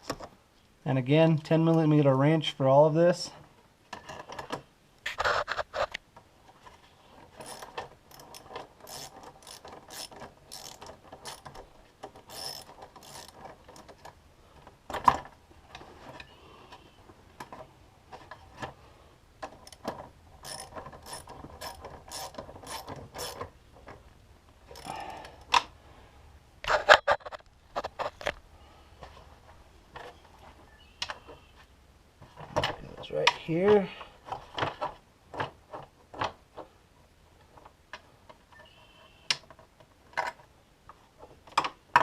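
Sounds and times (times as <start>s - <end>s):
socket ratchet clicking: 7.4s - 11.5s, 12.3s - 13.4s, 20.4s - 23.4s.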